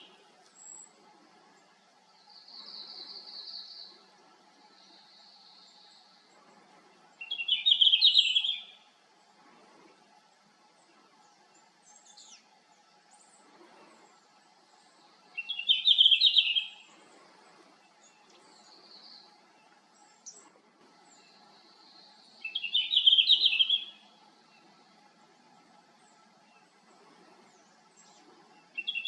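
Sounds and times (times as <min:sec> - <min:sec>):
bird warbling song: 0:07.1 - 0:08.9, 0:11.2 - 0:12.5, 0:13.1 - 0:24.9, 0:25.9 - 0:29.0.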